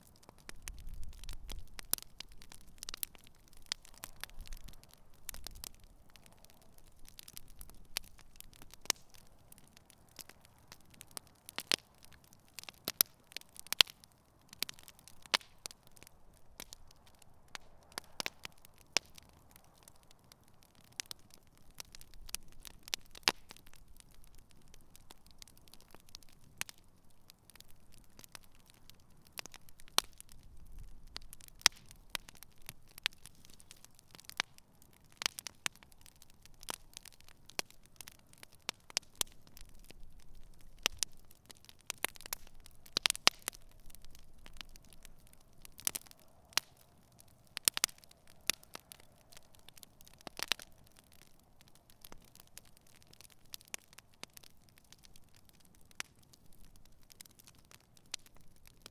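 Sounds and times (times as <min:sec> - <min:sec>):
wood campfire crackling: 0:00.0 - 0:58.9.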